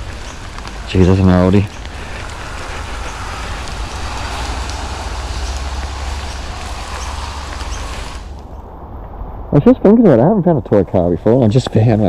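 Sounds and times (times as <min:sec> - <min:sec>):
rain hitting camera housing: 0:00.0 - 0:09.2
low rumble: 0:00.0 - 0:10.7.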